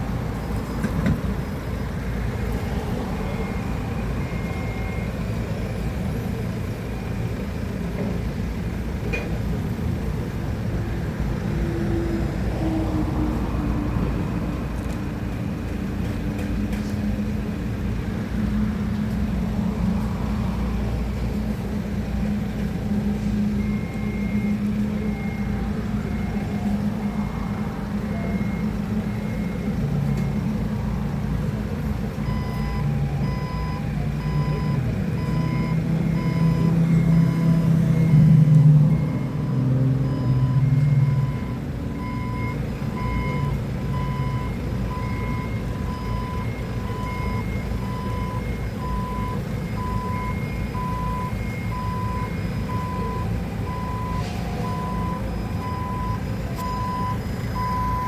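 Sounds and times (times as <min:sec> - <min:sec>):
reversing alarm beeping: 0:02.7 - 0:06.6, 0:22.5 - 0:30.8, 0:31.4 - 0:58.0
forklift engine running: 0:14.8 - 0:58.0.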